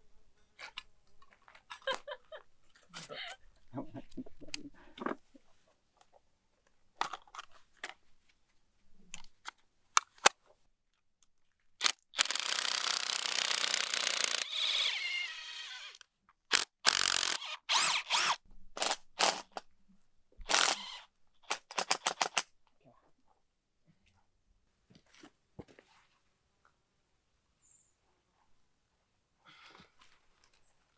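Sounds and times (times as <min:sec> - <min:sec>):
handheld power tool running: 0:11.8 - 0:19.6, 0:20.5 - 0:22.4
sharp clicks and knocks: 0:21.5 - 0:22.4.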